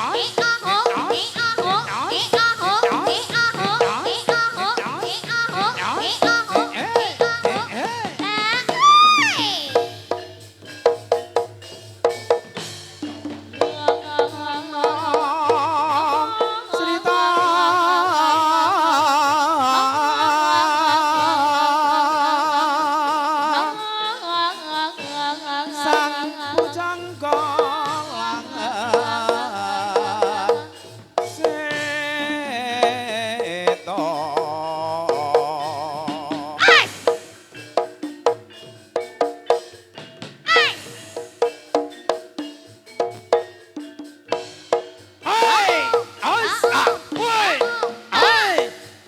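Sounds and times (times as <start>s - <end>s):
wavering melody line: 0.0s - 11.7s, 35.5s - 37.4s, 40.5s - 49.0s
hand drums beating: 0.0s - 49.0s.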